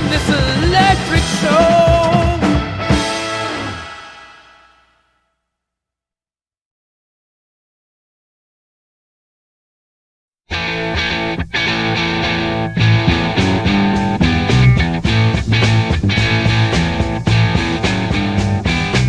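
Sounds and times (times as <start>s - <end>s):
psychedelic rock band music: 0.0s - 4.8s, 10.5s - 19.0s.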